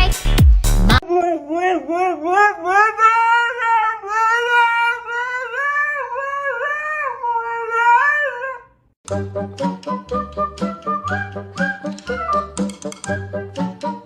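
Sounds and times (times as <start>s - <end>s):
dog howling: 1.2s - 8.8s.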